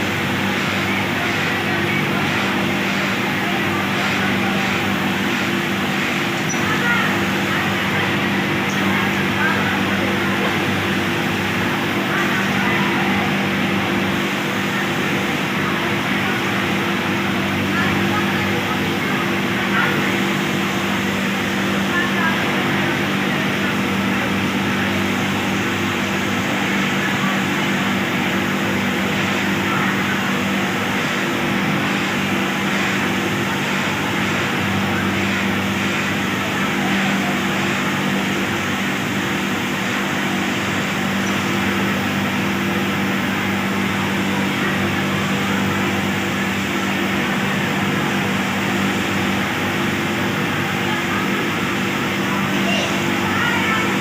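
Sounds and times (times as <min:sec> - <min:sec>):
industrial sewing machines running: 0:00.0 - 0:54.0.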